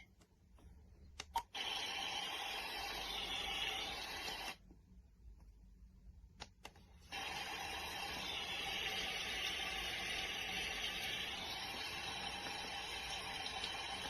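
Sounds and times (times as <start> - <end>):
clicks: 0.0 - 1.5, 6.3 - 6.9.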